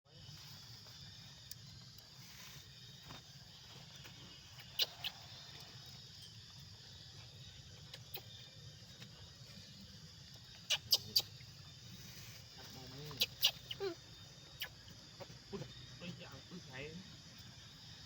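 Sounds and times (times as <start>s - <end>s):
monkey squeaking: 4.7s - 5.2s, 10.7s - 11.4s, 13.1s - 14.0s.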